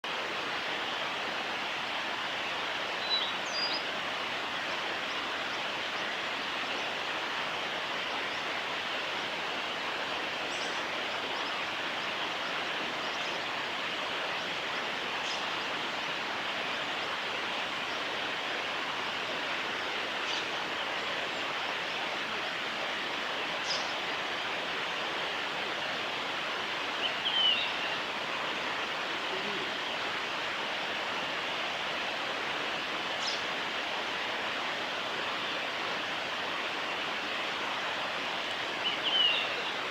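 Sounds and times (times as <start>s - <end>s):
running water rushing: 0.0s - 39.9s
birdsong: 2.8s - 7.1s, 10.4s - 18.4s, 19.8s - 22.2s, 23.3s - 24.2s, 26.8s - 30.0s, 33.1s - 33.6s, 38.4s - 39.9s.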